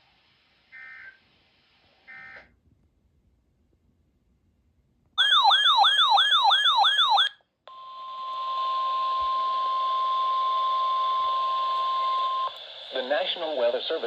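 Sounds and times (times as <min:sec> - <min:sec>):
sweeping electronic siren alert: 0:05.2 - 0:12.5
radio static: 0:12.5 - 0:14.0.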